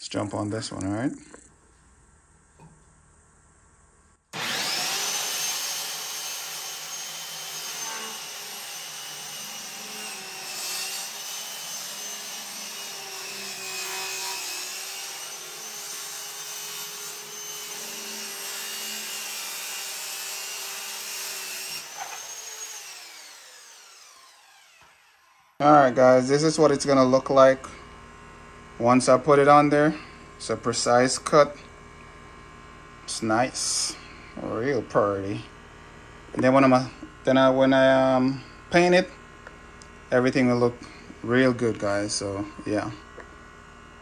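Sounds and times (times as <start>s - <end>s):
power saw cutting wood: 4.3s - 25.6s.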